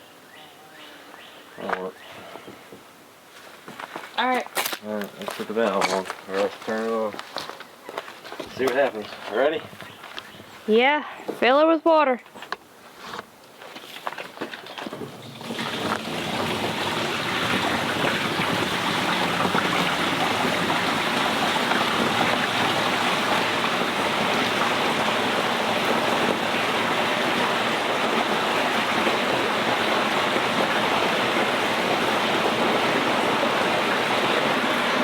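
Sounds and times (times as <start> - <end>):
water rushing into plastic tank: 14.6 - 35.0.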